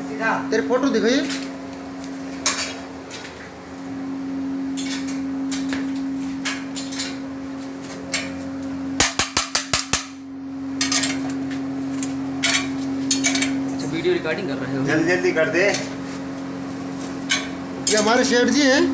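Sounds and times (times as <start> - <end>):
steady machine hum: 0.0 - 18.9
sharp metal knocks: 9.0 - 10.2.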